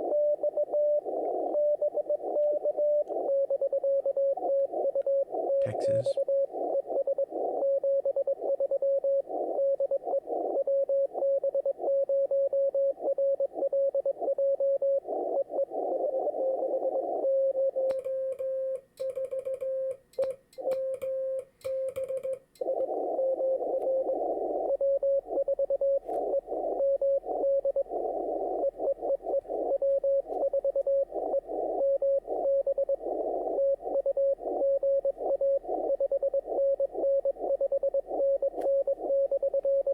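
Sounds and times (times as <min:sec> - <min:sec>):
radio band hiss: 0:05.6 - 0:06.2.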